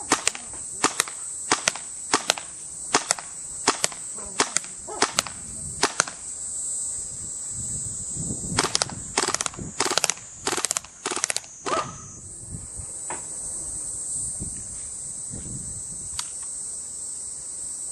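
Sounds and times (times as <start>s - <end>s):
airsoft gun firing: 0.0s - 6.2s, 8.6s - 12.0s
high-pitched insect chirring: 0.0s - 17.9s.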